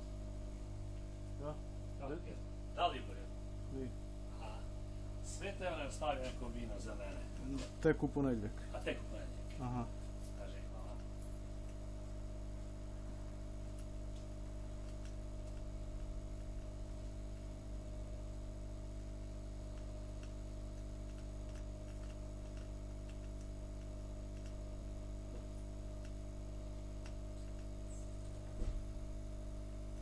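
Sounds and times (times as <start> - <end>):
electrical hum with tones: 0.0 - 30.0
faint small clicks: 19.7 - 24.6.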